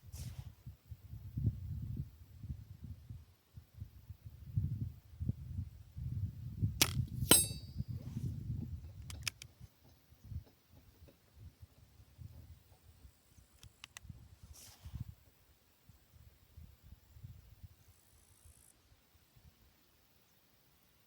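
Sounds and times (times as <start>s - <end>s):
short metallic ring: 7.2s - 8.1s.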